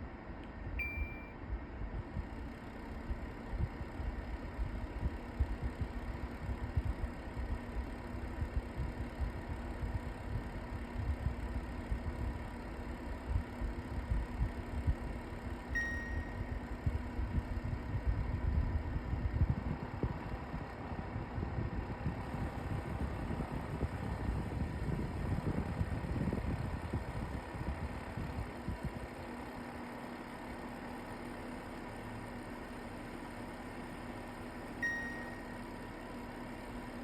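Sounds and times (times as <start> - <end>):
short beep: 0.8 - 1.4, 15.8 - 16.6, 34.8 - 35.6
air purifier fan rattling: 1.9 - 35.9.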